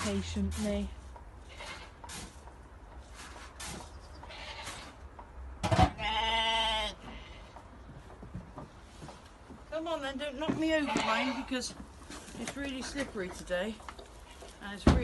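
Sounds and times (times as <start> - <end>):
goat bleating: 1.4 - 2.0, 4.2 - 5.0, 5.8 - 7.4, 10.8 - 11.6
animals moving rustles: 7.0 - 14.9.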